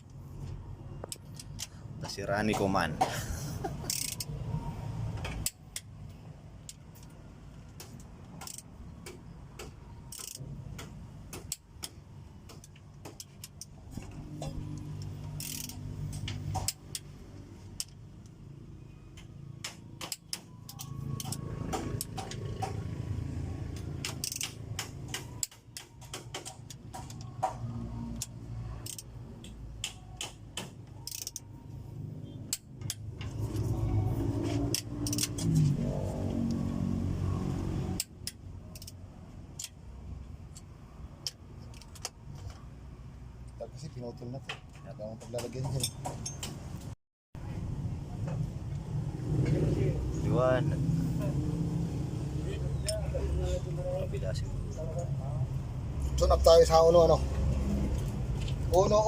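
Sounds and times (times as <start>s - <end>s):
hand tools clinking on metal: 45.3s - 46.6s.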